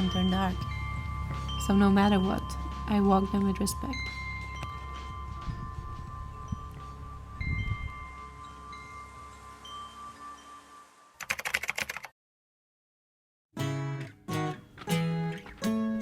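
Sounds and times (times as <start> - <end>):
low wind rumble: 0.0 - 9.6
cowbells ringing: 0.0 - 10.8
rapid clicking: 11.2 - 12.1.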